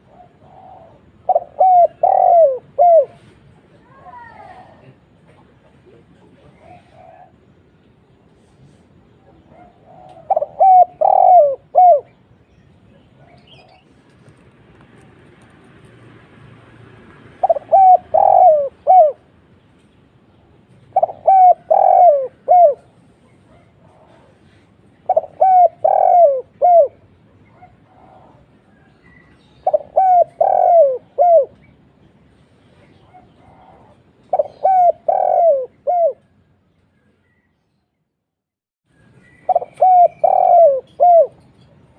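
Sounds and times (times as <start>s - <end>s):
dove cooing: 0.0s - 3.3s, 6.3s - 7.6s, 9.2s - 12.2s, 17.4s - 19.4s, 20.8s - 31.7s, 32.9s - 36.4s, 39.4s - 41.6s.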